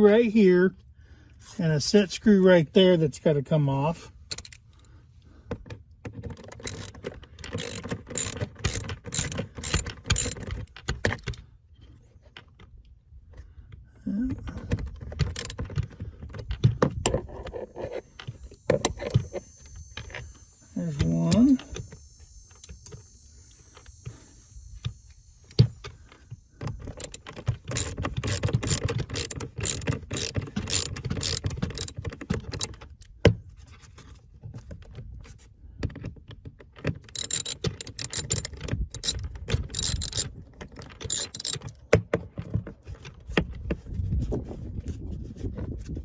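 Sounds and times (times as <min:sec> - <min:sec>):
ratchet clicking: 0:06.5 - 0:11.3, 0:15.2 - 0:15.7, 0:26.8 - 0:32.8, 0:37.1 - 0:41.7.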